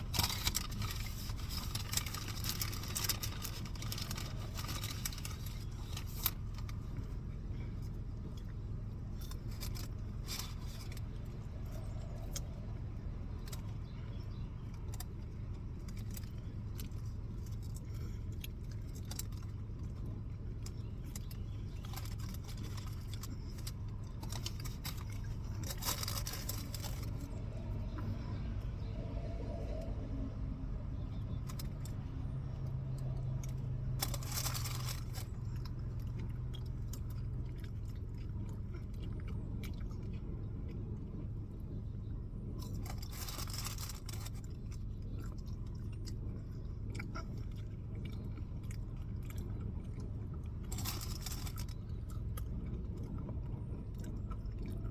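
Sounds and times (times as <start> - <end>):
low hum: 0.0 - 54.9
utensils and packaging clinking: 34.0 - 35.3.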